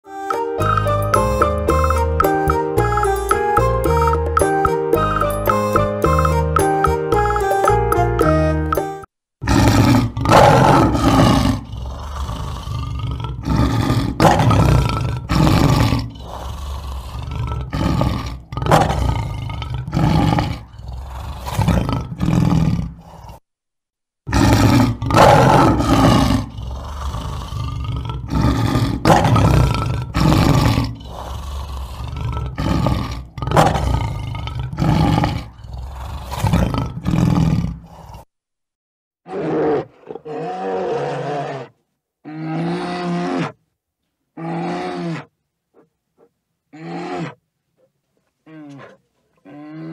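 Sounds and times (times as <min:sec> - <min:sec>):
lion roaring: 0:09.4 - 0:23.4, 0:24.3 - 0:38.3, 0:39.3 - 0:43.6, 0:44.4 - 0:45.9, 0:46.7 - 0:47.4, 0:48.5 - 0:49.9.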